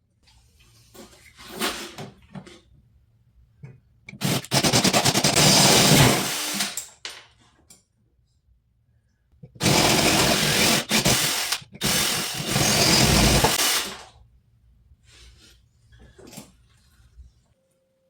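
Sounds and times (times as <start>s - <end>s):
drill drilling out a rivet: 4.1s - 6.8s, 9.6s - 14.0s.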